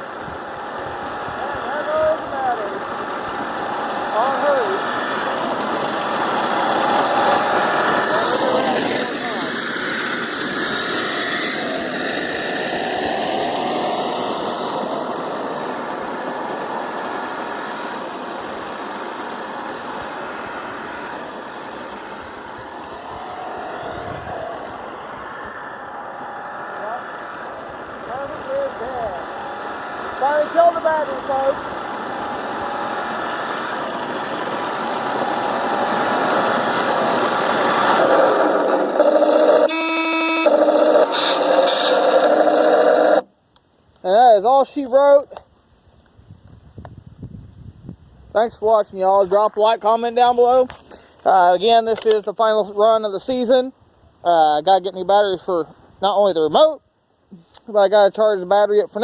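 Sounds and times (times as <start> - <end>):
vehicle approaching: 0.0 - 45.4
toy car electric motor whining: 37.8 - 43.3.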